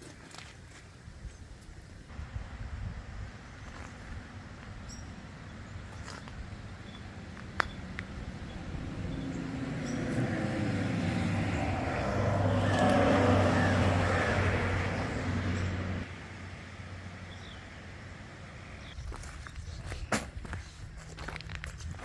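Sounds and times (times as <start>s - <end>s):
vehicle engine running: 3.2s - 18.9s.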